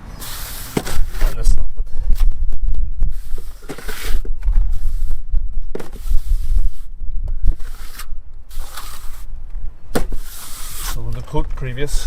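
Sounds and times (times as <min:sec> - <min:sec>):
trowel scraping cement on wall: 0:00.2 - 0:01.5, 0:03.1 - 0:05.2, 0:07.5 - 0:09.3, 0:10.0 - 0:11.2
steady low rumble: 0:01.0 - 0:12.0.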